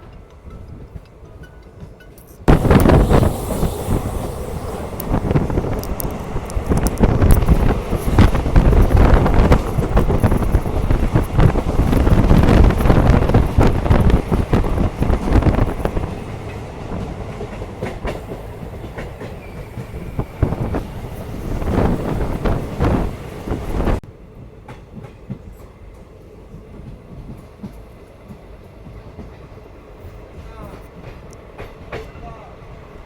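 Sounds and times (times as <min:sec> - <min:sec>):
train wheels rumbling on rails: 0:00.0 - 0:33.0
clattering clicks: 0:05.0 - 0:16.0.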